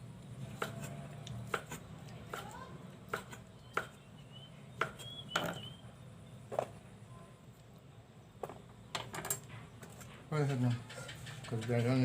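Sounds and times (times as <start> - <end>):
knife chopping on cutting board: 0.6 - 4.0, 4.8 - 5.6.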